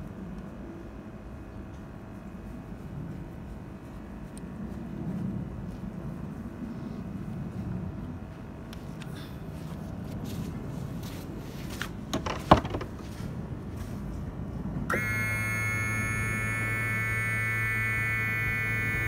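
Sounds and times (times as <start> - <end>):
steady buzzing electronic tone: 14.9 - 19.0.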